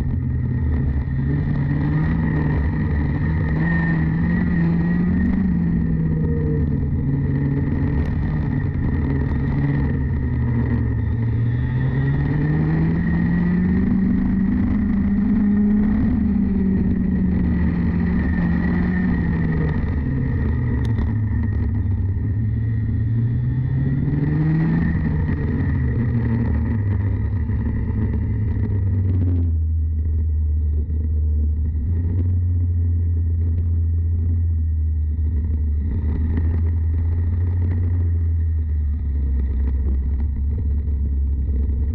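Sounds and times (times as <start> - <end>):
kart engine revving: 0.0 - 29.2.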